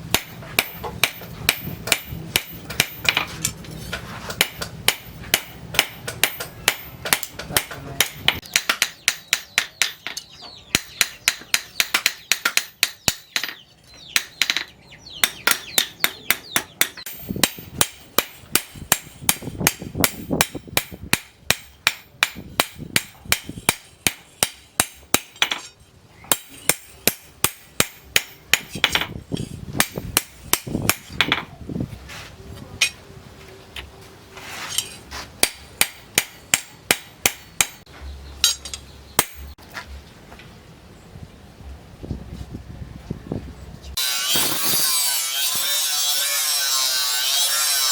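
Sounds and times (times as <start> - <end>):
hammer striking metal on anvil: 0.1 - 3.6, 4.3 - 13.6, 14.2 - 29.1, 34.8 - 39.6.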